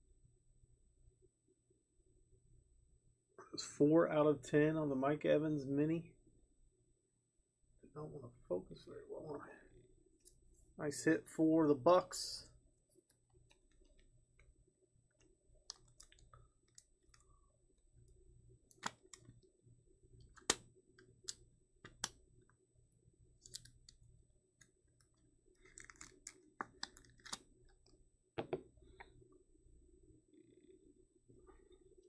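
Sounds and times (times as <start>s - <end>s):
trading cards clicking and snapping: 20.3s - 22.2s, 25.6s - 27.4s.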